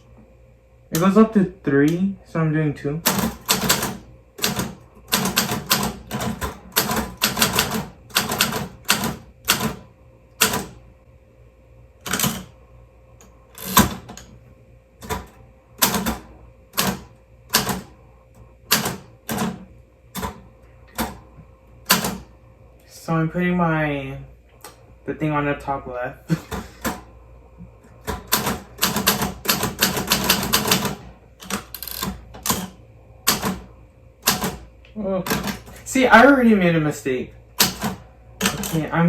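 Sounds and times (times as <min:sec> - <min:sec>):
typewriter keystrokes: 0:03.1 - 0:09.8, 0:10.4 - 0:10.8, 0:12.0 - 0:12.5, 0:16.8 - 0:17.9, 0:21.9 - 0:22.2, 0:28.1 - 0:33.6, 0:34.2 - 0:34.6, 0:35.3 - 0:35.8, 0:37.6 - 0:38.8.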